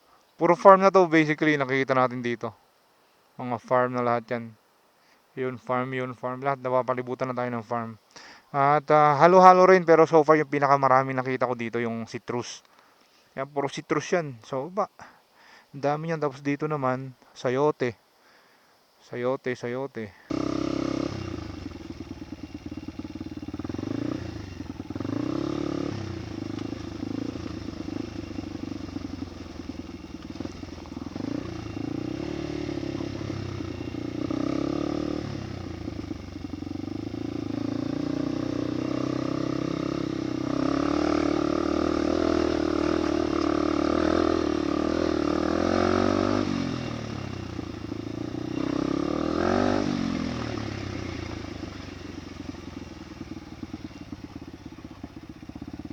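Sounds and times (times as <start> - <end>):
motorcycle engine running: 20.3 - 55.9.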